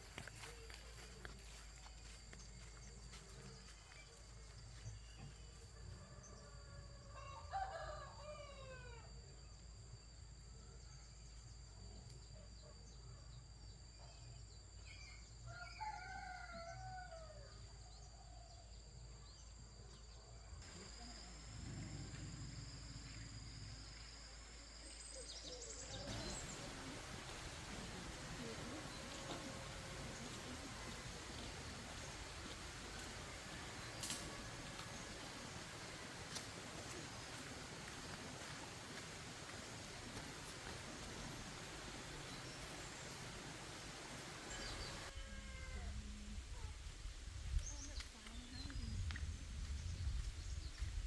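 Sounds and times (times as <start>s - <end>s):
faint rooster crowing: 5.7s - 9.5s, 15.5s - 18.6s, 25.8s - 35.9s, 44.4s - 46.4s.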